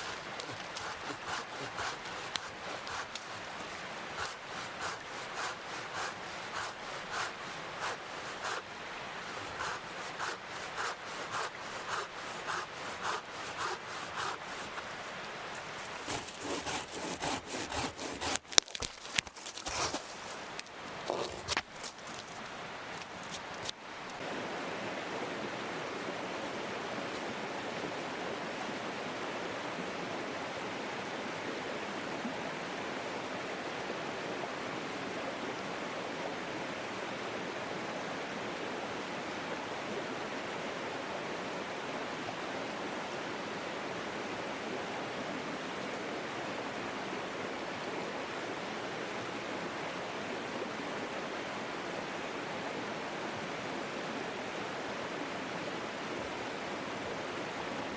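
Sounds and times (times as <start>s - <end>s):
mountain stream flowing: 0.0s - 57.9s.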